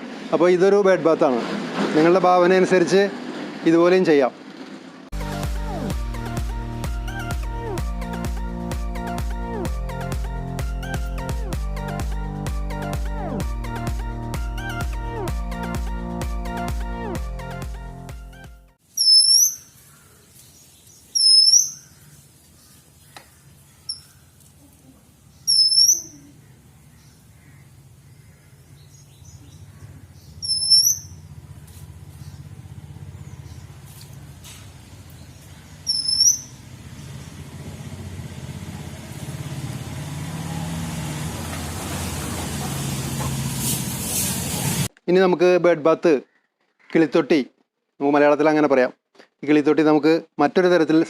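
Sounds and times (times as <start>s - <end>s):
bird calling high sliding notes: 18.9s - 22.8s, 25.4s - 26.5s, 30.3s - 31.8s, 35.7s - 37.2s.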